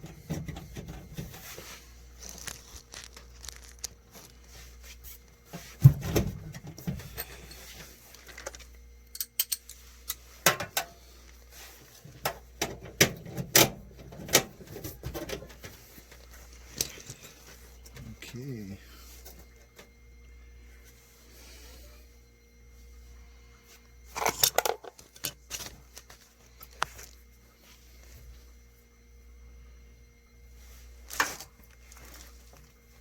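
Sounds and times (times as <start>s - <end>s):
metal parts and tools clicking: 8.3s - 10.2s.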